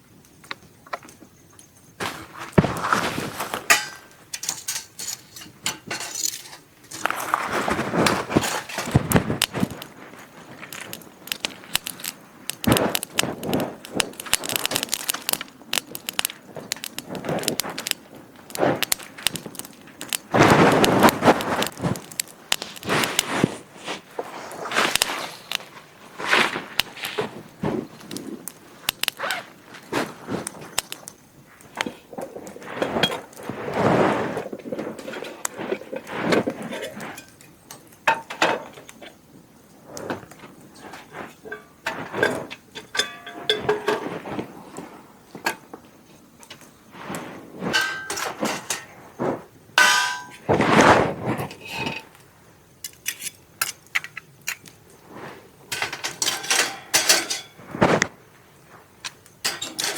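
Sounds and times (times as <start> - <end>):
metal cookware clinking and clanging: 3.5 - 7.1, 41.4 - 44.1, 47.7 - 48.9, 49.8 - 50.5, 51.5 - 52.1, 55.7 - 57.6, 59.4 - 59.9.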